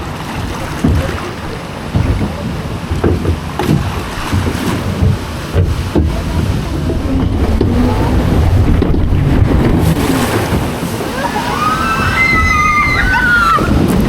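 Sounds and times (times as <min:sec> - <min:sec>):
wind rushing on microphone: 0:05.5 - 0:14.0.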